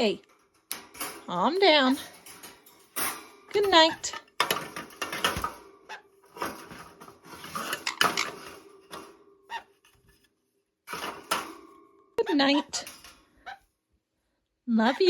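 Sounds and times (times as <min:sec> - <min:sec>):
rustling and clattering in a cage: 0:00.0 - 0:13.8.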